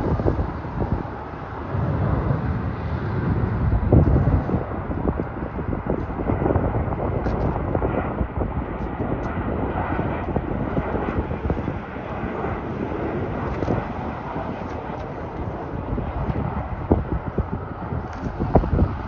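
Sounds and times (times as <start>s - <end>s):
jet engines rushing: 0.0s - 19.0s.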